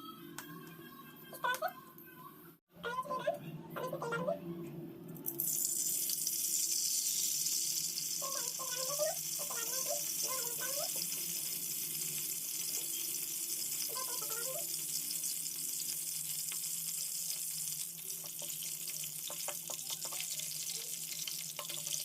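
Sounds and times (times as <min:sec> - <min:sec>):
food sizzling in hot oil: 0:05.4 - 0:22.0.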